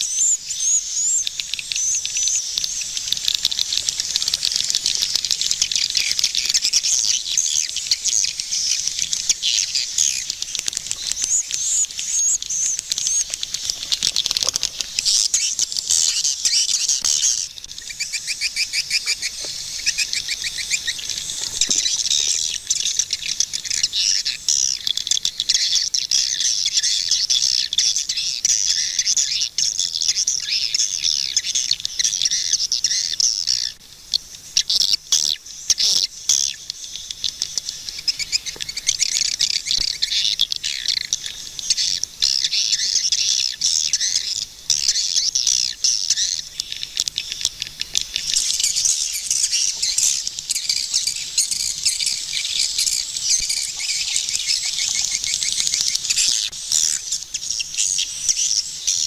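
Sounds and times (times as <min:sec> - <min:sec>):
swiftlets chirping: 0:46.1 - 0:57.1.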